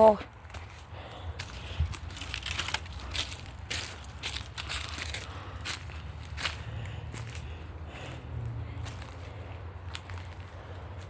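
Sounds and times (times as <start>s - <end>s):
footsteps crunching over debris: 0.0s - 8.2s, 8.8s - 11.0s.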